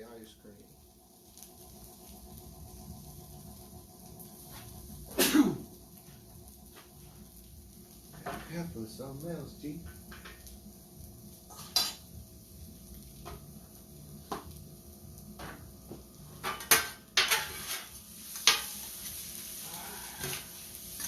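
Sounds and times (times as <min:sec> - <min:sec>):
food sizzling in pan: 0:00.0 - 0:21.0
metal utensils clanking on pan: 0:08.1 - 0:08.7, 0:09.8 - 0:10.5, 0:11.5 - 0:12.2, 0:16.3 - 0:18.9, 0:20.2 - 0:21.0.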